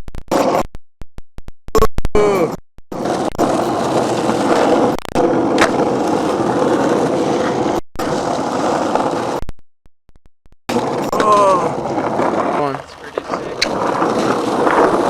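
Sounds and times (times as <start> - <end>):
skateboard wheels rolling on concrete: 3.0 - 9.4, 10.7 - 15.0.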